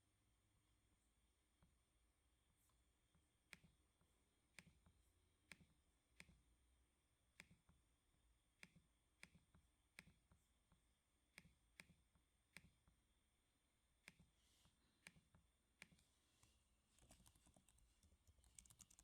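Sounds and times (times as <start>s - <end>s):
faint computer clicks: 17.0s - 19.0s.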